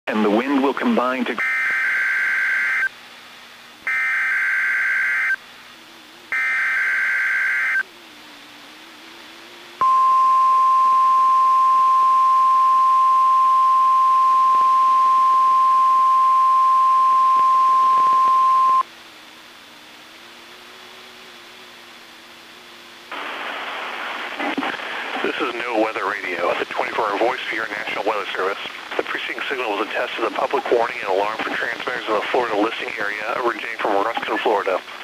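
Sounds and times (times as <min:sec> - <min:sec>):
steady warning alarm tone: 0:01.4 - 0:02.9, 0:03.9 - 0:05.4, 0:06.3 - 0:07.9, 0:09.8 - 0:18.9.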